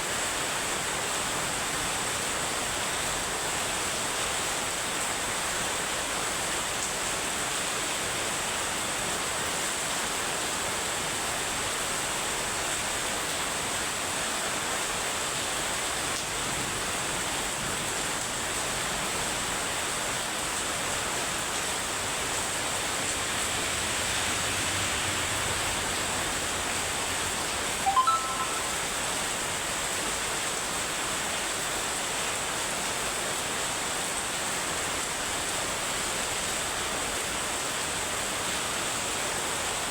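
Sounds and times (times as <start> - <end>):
heavy rain pouring: 0.1 - 29.2, 29.8 - 39.9
rising three-note chirp: 27.8 - 29.1.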